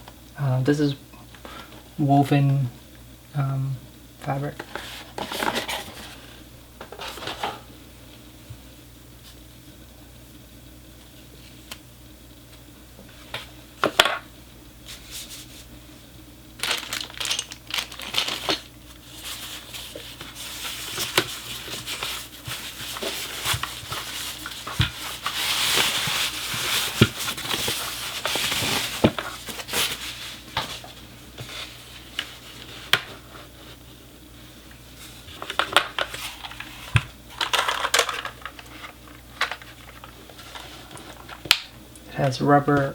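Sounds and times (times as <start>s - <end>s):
packaging crinkling: 16.6s - 31.0s, 35.4s - 41.4s.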